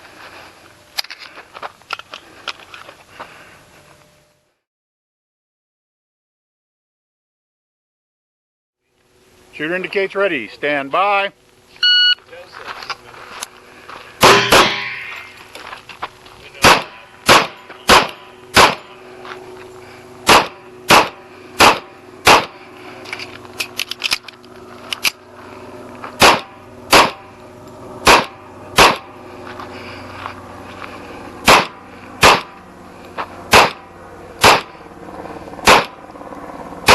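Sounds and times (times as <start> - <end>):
pistol shots: 14.2 - 15.1, 16.6 - 18.9, 20.2 - 22.6, 26.2 - 27.3, 28.0 - 29.1, 31.4 - 32.6, 33.5 - 34.8, 35.6 - 36.0.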